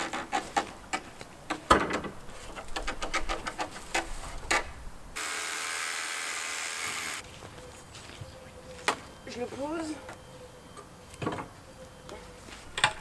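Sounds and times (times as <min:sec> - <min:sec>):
wooden beams knocking and scraping: 0:00.0 - 0:04.7.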